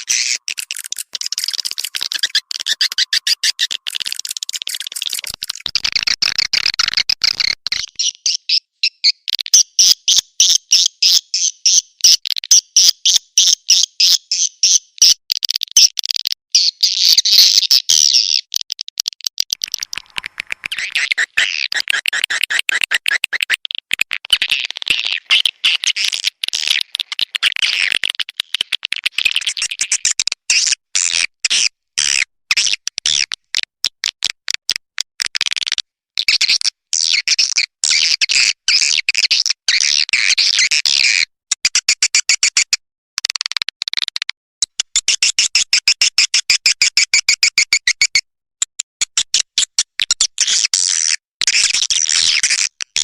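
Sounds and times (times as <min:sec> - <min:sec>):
swiftlet calls twittering and chirping: 0:00.0 - 0:11.8.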